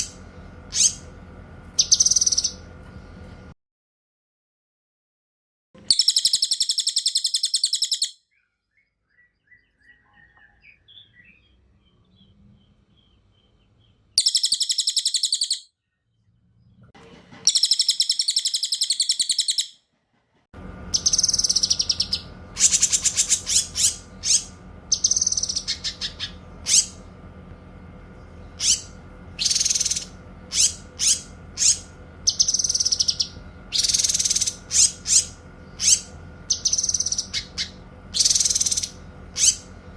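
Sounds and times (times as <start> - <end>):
songbird fast rolling trills: 0.0 - 1.0, 20.9 - 27.0, 28.4 - 39.7
steady background hum: 0.0 - 3.6, 5.8 - 39.9.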